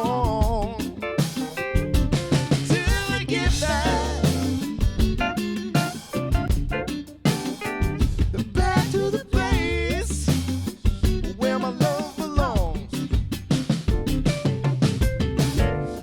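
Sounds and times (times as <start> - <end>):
bass: 0.0 - 16.0
drum kit: 0.0 - 16.0
person singing: 2.7 - 4.8, 8.4 - 10.4, 11.3 - 12.9.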